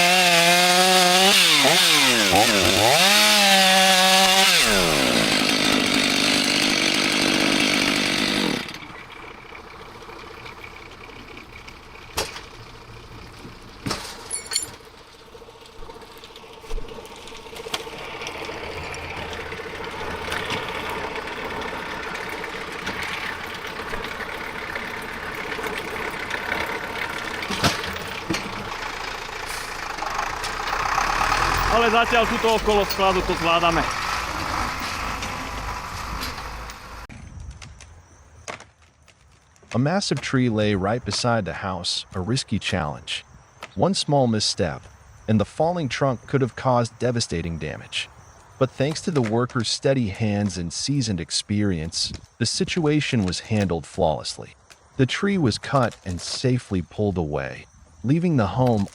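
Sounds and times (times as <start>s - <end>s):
chainsaw running: 0.0s - 12.0s, 14.4s - 37.1s.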